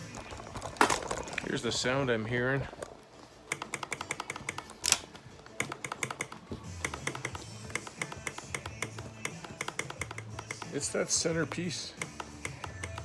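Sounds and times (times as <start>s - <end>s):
backrest rattling in quick clicks: 3.5s - 10.7s.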